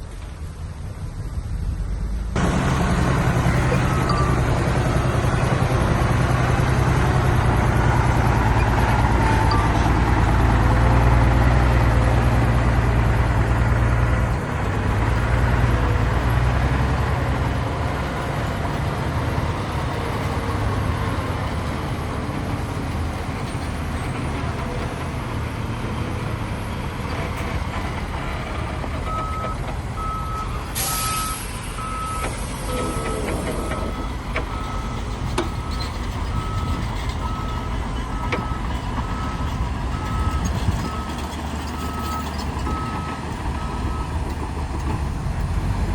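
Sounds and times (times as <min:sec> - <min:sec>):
diesel engines droning: 0:00.0 - 0:45.9
reversing alarm beeps: 0:03.4 - 0:07.2, 0:08.1 - 0:11.0, 0:29.1 - 0:41.2.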